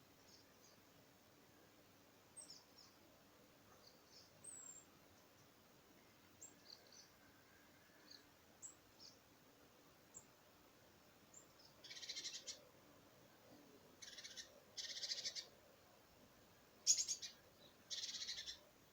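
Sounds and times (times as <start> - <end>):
small birds chirping: 0.1 - 0.9, 2.3 - 9.4, 10.0 - 10.4, 11.2 - 12.8, 13.7 - 16.0, 16.8 - 18.8.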